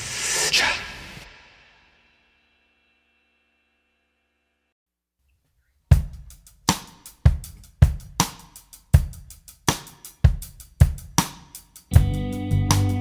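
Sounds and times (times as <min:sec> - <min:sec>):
drum-kit beat: 0:05.9 - 0:13.0
bass and sustained chords: 0:12.0 - 0:13.0.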